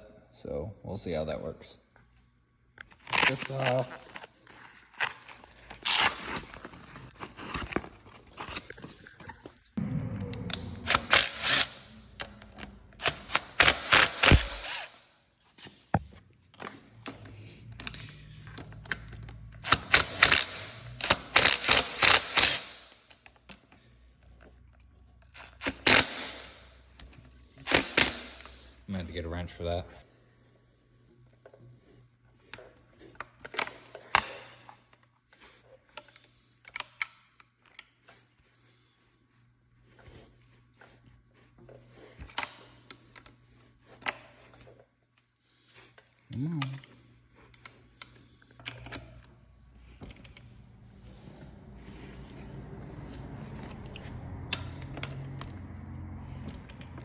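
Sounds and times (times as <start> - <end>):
impact driver rattling bursts: 13.0 - 14.9, 19.6 - 22.8
wrench clicking on metal parts: 17.8 - 23.2, 25.3 - 26.6.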